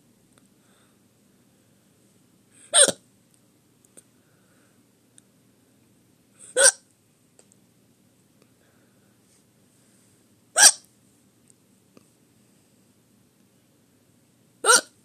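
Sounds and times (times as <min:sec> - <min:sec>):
person hiccupping: 0:02.7 - 0:03.0, 0:06.4 - 0:06.8, 0:10.6 - 0:10.8, 0:14.6 - 0:15.0.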